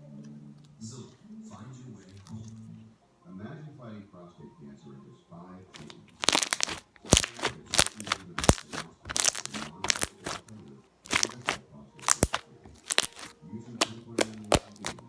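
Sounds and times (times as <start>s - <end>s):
slime squeezed wet pops: 5.8s - 10.5s, 11.1s - 15.0s.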